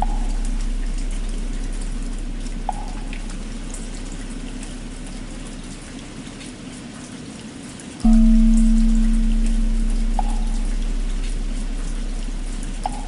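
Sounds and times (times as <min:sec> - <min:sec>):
steady rain: 0:00.0 - 0:13.0
temple bell humming: 0:08.0 - 0:13.0.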